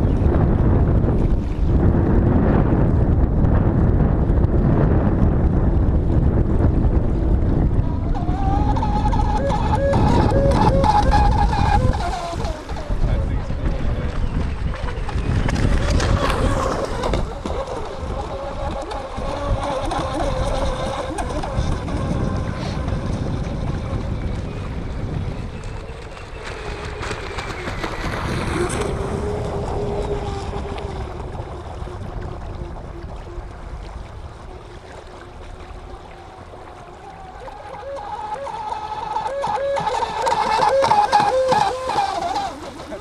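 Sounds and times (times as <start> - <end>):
whining electric motor: 7.6 - 33.2, 35.8 - 43.0.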